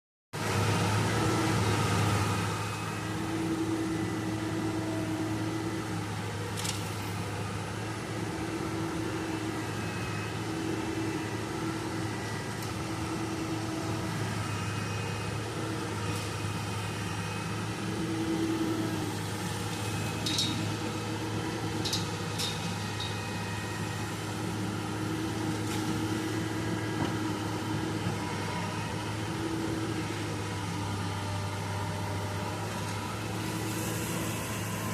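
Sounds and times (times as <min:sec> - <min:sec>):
excavator diesel engine running: 0:00.4 - 0:34.9
hydraulic whine: 0:00.4 - 0:34.9.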